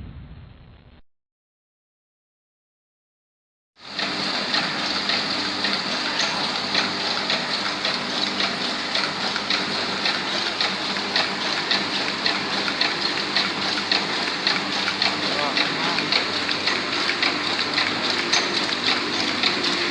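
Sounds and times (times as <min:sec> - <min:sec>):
printing press clatter: 0:03.8 - 0:19.9
steady machine hum: 0:03.8 - 0:19.9.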